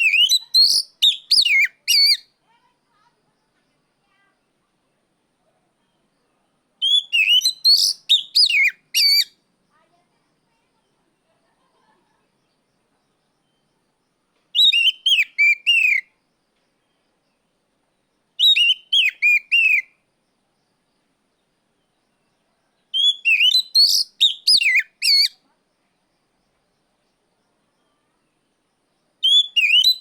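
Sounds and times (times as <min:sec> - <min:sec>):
bird loud whistled calls: 0:00.0 - 0:02.3, 0:06.8 - 0:09.4, 0:14.6 - 0:16.1, 0:18.4 - 0:19.9, 0:22.9 - 0:25.4, 0:29.2 - 0:30.0.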